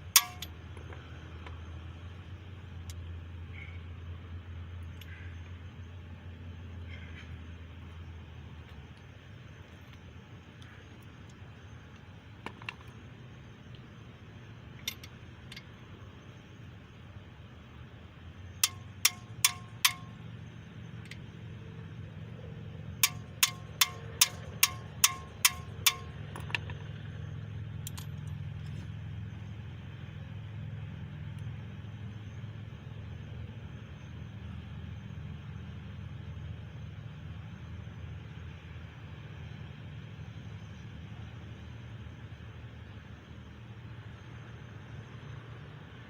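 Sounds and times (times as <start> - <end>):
hammer striking metal: 0.0 - 0.6, 18.6 - 20.2, 23.0 - 26.7
low steady hum: 0.0 - 46.0.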